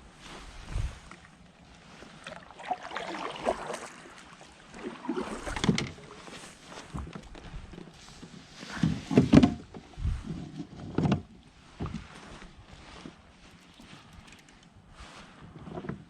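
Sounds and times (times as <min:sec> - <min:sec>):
gear knocking and thumping on kayak: 0:05.2 - 0:12.2.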